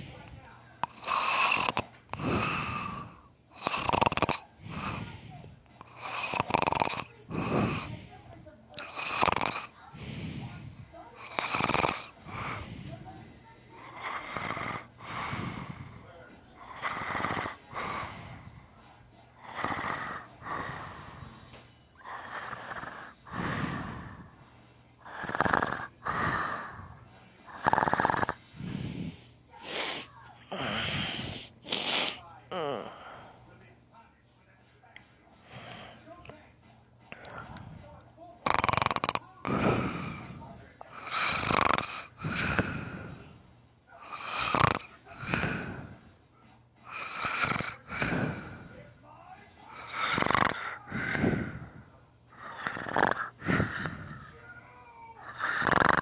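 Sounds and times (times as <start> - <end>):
soft breath: 0.0 - 33.7, 35.2 - 36.4, 37.0 - 38.3, 39.4 - 54.4
man snoring heavily: 0.9 - 5.2, 5.9 - 8.0, 8.8 - 10.6, 11.2 - 12.9, 14.0 - 16.0, 16.6 - 18.6, 19.4 - 21.3, 22.0 - 24.3, 25.0 - 29.2, 38.5 - 43.2, 44.0 - 46.0, 46.9 - 48.7, 49.7 - 51.8, 52.4 - 54.2, 55.3 - 56.0.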